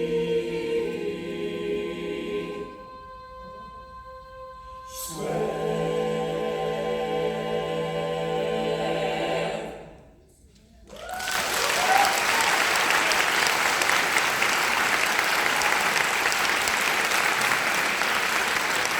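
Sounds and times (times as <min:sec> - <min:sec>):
choir singing held chord: 0:00.0 - 0:10.2
audience applause: 0:10.9 - 0:18.9.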